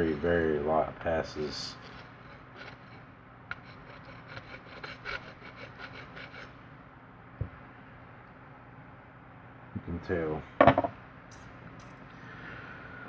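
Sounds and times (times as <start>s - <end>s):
hand file scraping metal: 1.3s - 6.6s.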